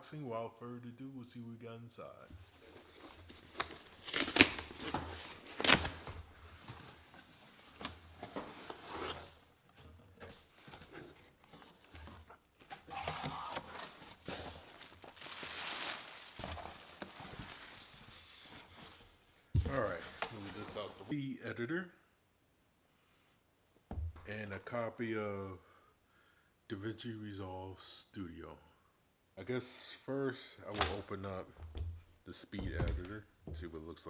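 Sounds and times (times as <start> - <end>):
packaging crinkling and rustling: 2.4 - 21.1, 30.7 - 31.2.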